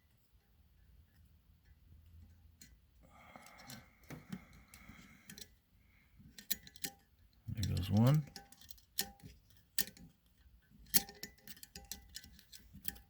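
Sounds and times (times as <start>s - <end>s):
metal pick clicking and scraping: 3.4s - 5.6s, 6.3s - 13.0s.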